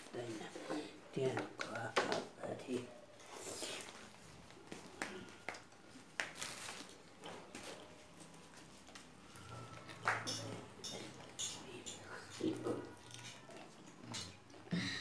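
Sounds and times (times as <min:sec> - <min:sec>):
chewing: 0:06.7 - 0:15.0
utensils clicking against dishes: 0:10.2 - 0:13.4.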